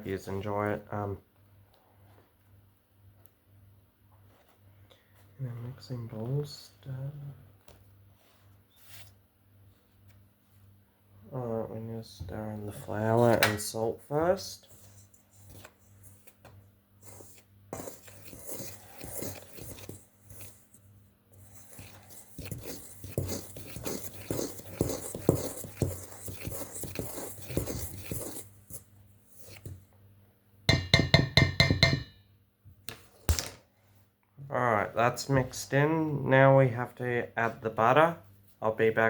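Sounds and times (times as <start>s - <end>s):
utensil scraping mixing bowl: 17.0s - 20.8s, 21.4s - 29.8s.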